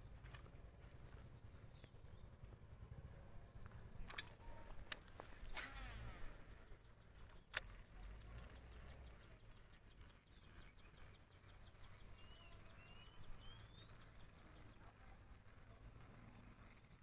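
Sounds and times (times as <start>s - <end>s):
bird chirps: 0.0s - 17.0s
sharp click: 4.0s - 5.8s, 7.3s - 7.9s.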